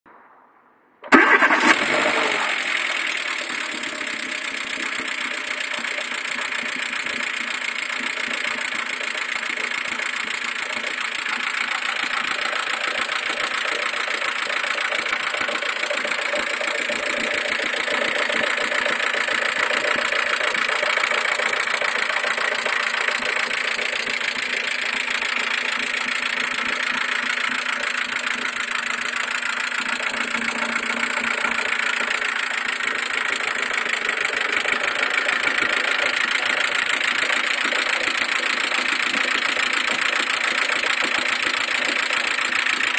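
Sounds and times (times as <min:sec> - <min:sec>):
car engine starting and idling: 0:01.0 - 0:42.9.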